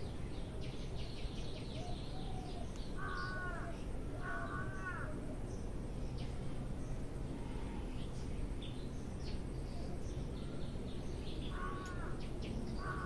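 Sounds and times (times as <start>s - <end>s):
small birds chirping: 0.0s - 13.0s
crow cawing: 3.0s - 5.2s, 11.5s - 12.2s, 12.8s - 13.0s.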